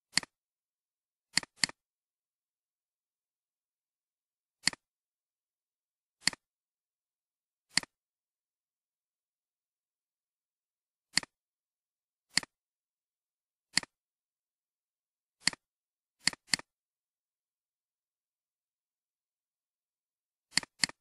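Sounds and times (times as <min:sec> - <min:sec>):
computer mouse clicking: 0:00.1 - 0:00.4, 0:01.3 - 0:01.8, 0:04.6 - 0:04.9, 0:06.2 - 0:06.5, 0:07.7 - 0:08.0, 0:11.1 - 0:11.4, 0:12.3 - 0:12.6, 0:13.7 - 0:14.0, 0:15.4 - 0:16.7, 0:20.5 - 0:21.0.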